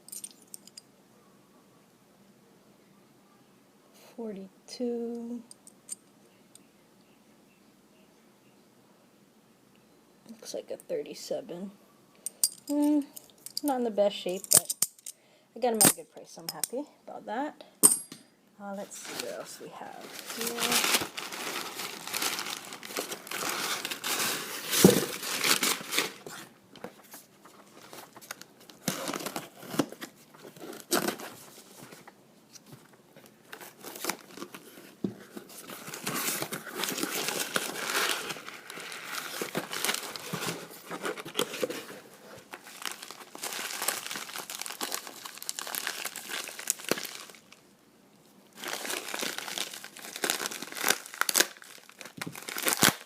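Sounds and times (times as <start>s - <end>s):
packaging crinkling and tearing: 18.8s - 31.9s, 33.4s - 47.6s, 48.5s - 53.0s.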